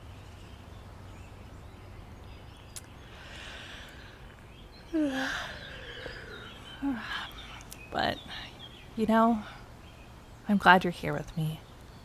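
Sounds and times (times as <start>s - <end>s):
faint birds: 0.0s - 12.0s
woman humming sigh: 4.9s - 7.5s.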